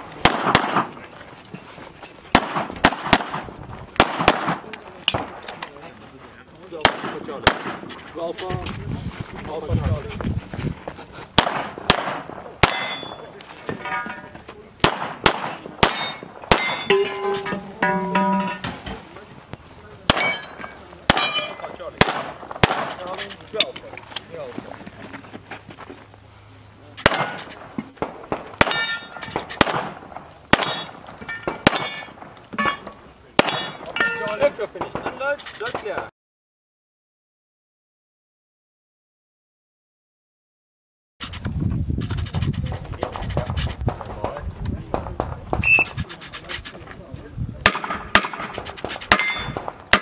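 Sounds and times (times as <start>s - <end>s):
pistol shots: 0.2s - 1.0s, 2.3s - 5.4s, 6.8s - 7.9s, 11.4s - 13.2s, 14.8s - 17.6s, 20.1s - 23.1s, 27.0s - 32.8s, 33.4s - 33.9s, 47.7s - 50.0s
steel targets ringing: 12.6s - 14.3s, 15.8s - 18.8s, 20.1s - 21.7s, 28.6s - 29.4s, 30.6s - 34.4s, 49.1s - 50.0s.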